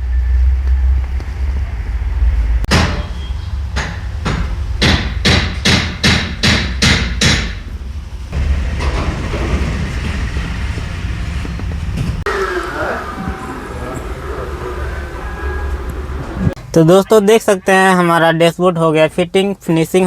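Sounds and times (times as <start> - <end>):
hammer blows: 2.7 - 7.7, 8.3 - 13.6
steady low rumble: 3.6 - 12.3.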